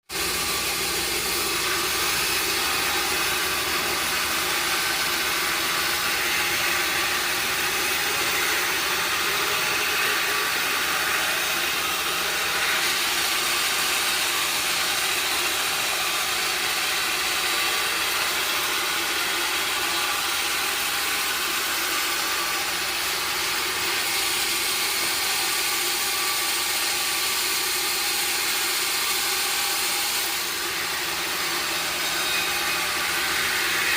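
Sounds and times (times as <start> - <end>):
sawmill machinery running: 0.0 - 33.9.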